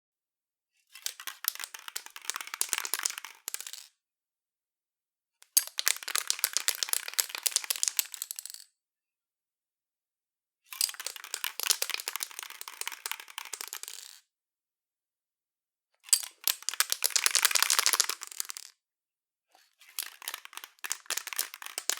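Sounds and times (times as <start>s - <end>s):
spray can ball rattling: 16.6s - 18.7s.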